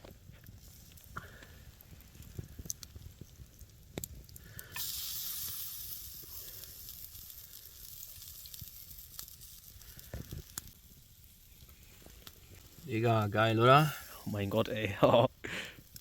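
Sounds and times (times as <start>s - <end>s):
chicken wings sizzling on grill: 4.4s - 16.0s.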